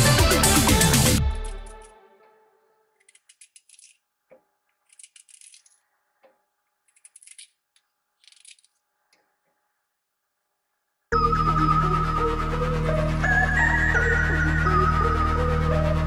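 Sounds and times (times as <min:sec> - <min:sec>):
faint rattling clicks: 0:03.0 - 0:09.6.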